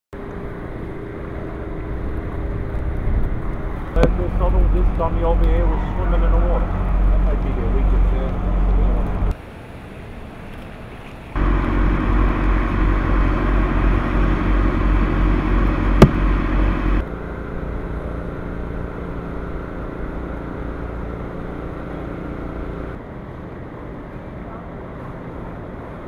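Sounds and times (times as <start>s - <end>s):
motor humming: 11.4s - 17.0s.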